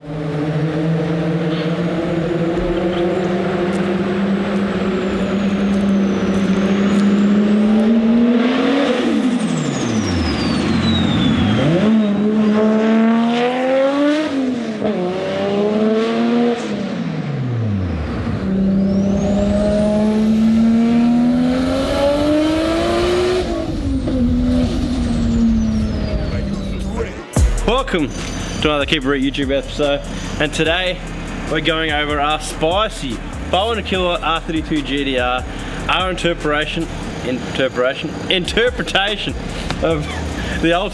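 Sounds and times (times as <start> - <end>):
car engine revving hard: 0.0 - 40.9.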